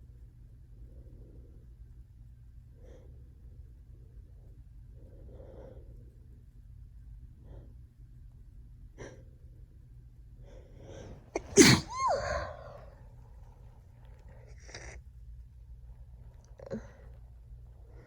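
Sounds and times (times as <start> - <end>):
faint breaths: 0.6 - 6.6, 9.0 - 14.9
woman sneezing: 11.4 - 12.9.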